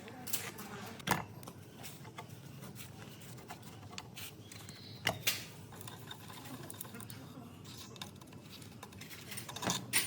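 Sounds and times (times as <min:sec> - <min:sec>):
tools and engine parts clicking: 0:03.5 - 0:10.0.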